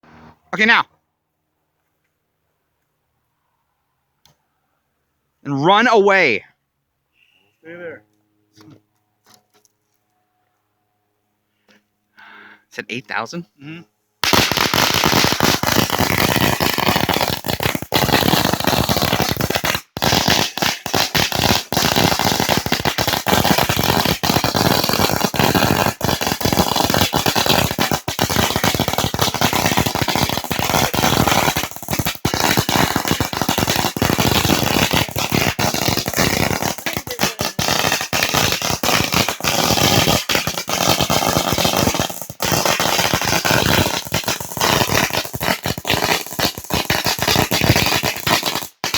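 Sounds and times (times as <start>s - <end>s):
firecrackers crackling: 14.2s - 48.9s.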